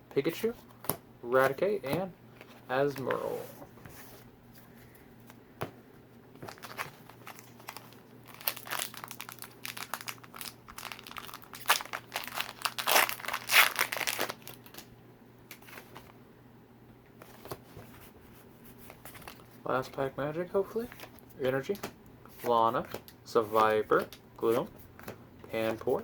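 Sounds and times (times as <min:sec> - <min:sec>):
foil wrapper crinkling and tearing: 0:06.5 - 0:14.9.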